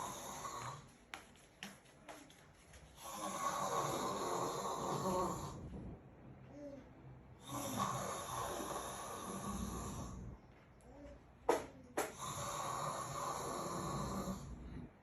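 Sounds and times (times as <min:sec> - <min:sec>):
man snoring: 0:00.0 - 0:00.8, 0:03.0 - 0:05.7, 0:07.4 - 0:10.3, 0:12.1 - 0:14.8.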